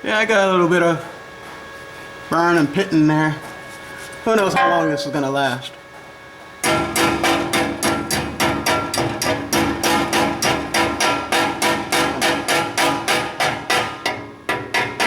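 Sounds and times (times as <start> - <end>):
hammer striking metal pipe: 4.6 - 5.8.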